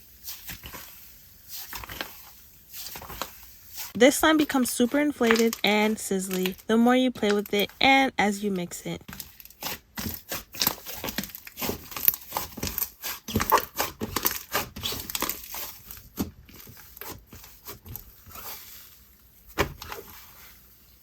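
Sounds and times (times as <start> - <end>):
slime squished by hand: 9.1 - 18.8.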